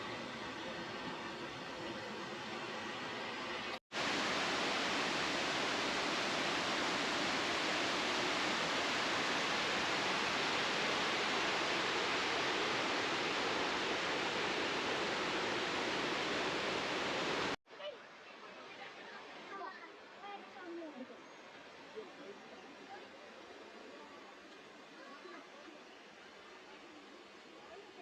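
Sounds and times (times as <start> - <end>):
waterfall rushing: 3.0 - 17.6.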